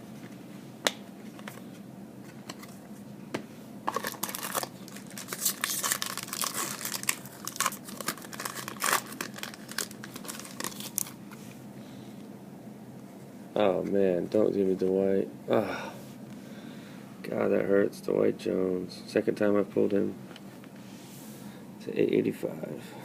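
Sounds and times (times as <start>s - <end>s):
foil wrapper crinkling and tearing: 3.9s - 11.2s.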